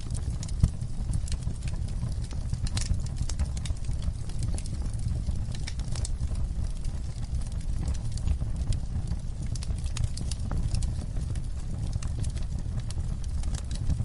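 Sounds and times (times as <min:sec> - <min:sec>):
fire crackling and popping: 0:00.0 - 0:14.0
low roar of flames: 0:00.0 - 0:14.0.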